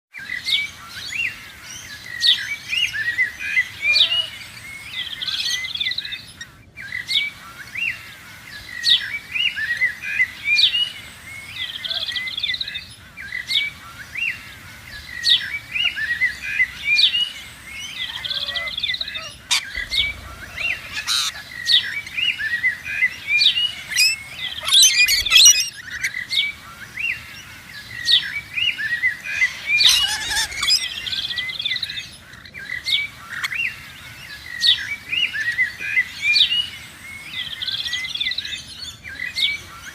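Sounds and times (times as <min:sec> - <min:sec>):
parrots chirping: 0:15.0 - 0:26.3, 0:29.1 - 0:31.8.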